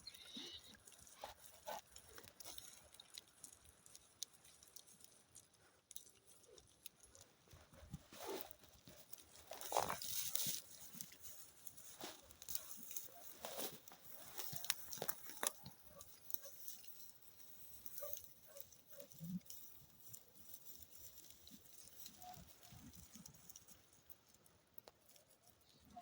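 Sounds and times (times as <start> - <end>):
goats' hooves pattering and clicking: 0.0 - 26.0.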